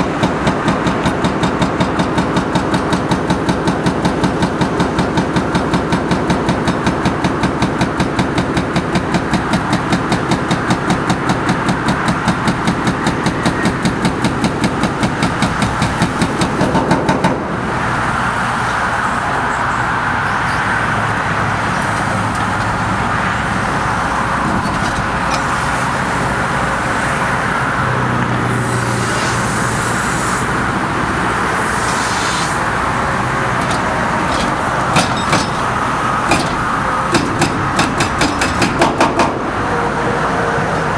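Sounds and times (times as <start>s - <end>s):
hydraulic breaker pounding concrete: 0.0s - 28.5s, 32.6s - 39.6s
excavator engine running: 0.0s - 39.9s
sharp knocks: 33.5s - 39.4s.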